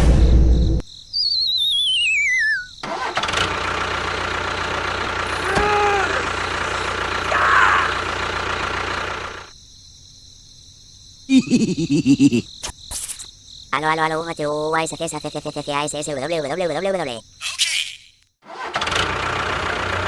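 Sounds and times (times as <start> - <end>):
rising and falling tone: 1.2 - 2.7
wavering whistle sliding down: 1.2 - 2.8
engine-like running sound: 2.8 - 9.5, 18.5 - 20.0.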